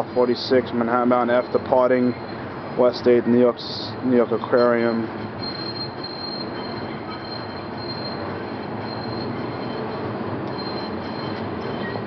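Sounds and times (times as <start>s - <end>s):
subway train wheels on rails: 0.0s - 12.0s
high-pitched wheel squeal: 4.4s - 12.0s.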